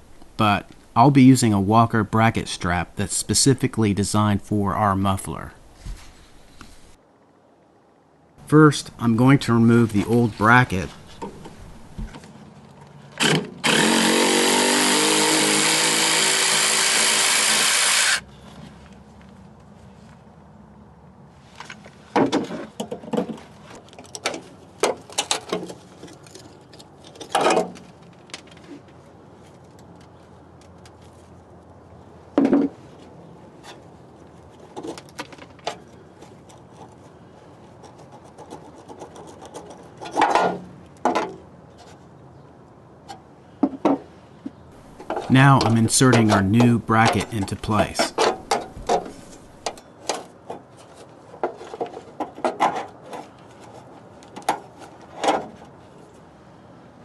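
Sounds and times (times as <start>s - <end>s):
power tool motor spinning up: 13.2s - 18.2s.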